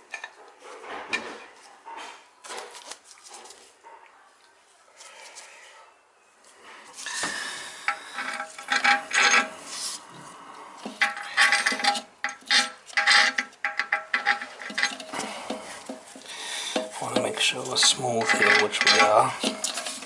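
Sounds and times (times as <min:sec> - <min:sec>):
scraping on porcelain: 0:07.2 - 0:10.0, 0:10.8 - 0:20.0.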